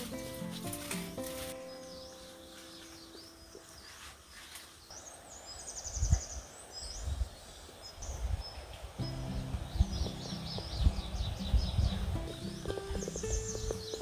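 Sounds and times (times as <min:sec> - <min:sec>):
background music: 0:00.0 - 0:02.9, 0:09.0 - 0:14.0
small birds chirping: 0:00.0 - 0:14.0
bird trill: 0:09.0 - 0:14.0
low dull thumps: 0:09.0 - 0:14.0.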